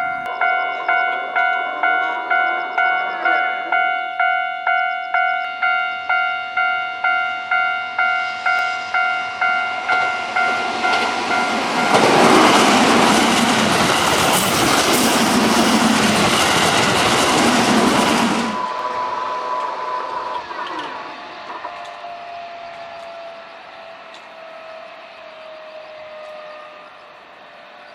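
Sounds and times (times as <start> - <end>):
level crossing bell clanging: 0.0 - 16.4
electric train passing: 0.0 - 27.9
wheels clacking over rail joints: 9.7 - 22.0.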